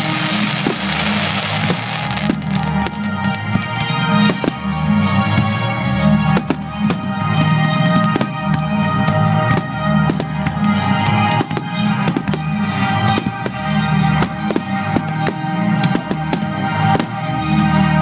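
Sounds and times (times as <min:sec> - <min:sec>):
fireworks bangs: 0:00.0 - 0:03.7
loud music: 0:00.0 - 0:18.0.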